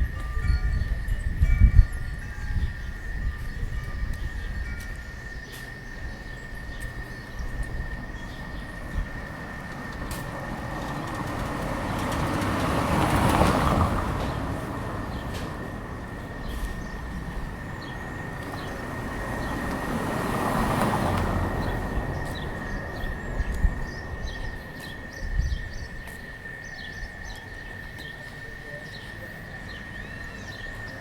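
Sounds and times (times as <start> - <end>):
vehicle passing by: 6.3 - 25.7.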